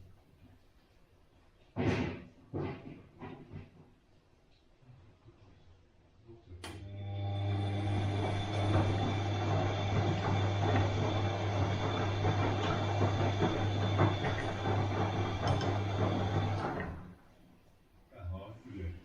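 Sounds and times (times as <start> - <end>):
washing machine motor hum: 6.7 - 17.3.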